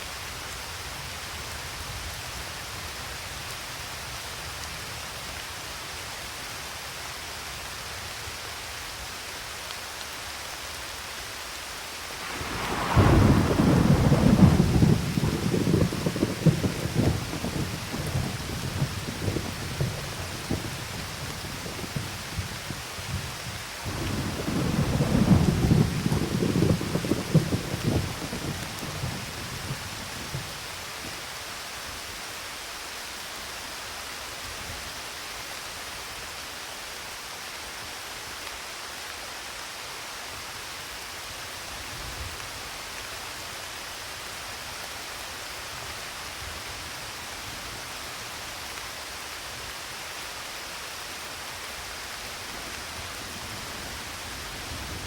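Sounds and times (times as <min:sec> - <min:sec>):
steady rain: 0:00.0 - 0:55.0
thunder rumbling: 0:12.0 - 0:31.2.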